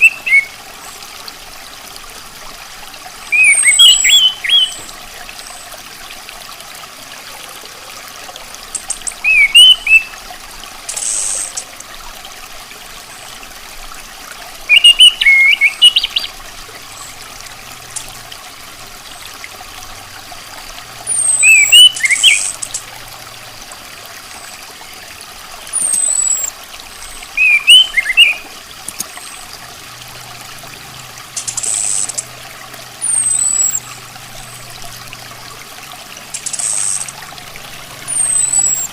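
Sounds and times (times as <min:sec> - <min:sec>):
thrush chirping and whistling: 0:00.0 - 0:00.5, 0:03.3 - 0:04.9, 0:08.8 - 0:10.1, 0:10.9 - 0:11.7, 0:14.7 - 0:16.3, 0:21.1 - 0:22.8, 0:25.8 - 0:26.5, 0:27.4 - 0:28.4, 0:31.4 - 0:32.3, 0:33.0 - 0:34.0, 0:36.4 - 0:37.1, 0:38.1 - 0:38.9
trickle of water: 0:00.0 - 0:38.9.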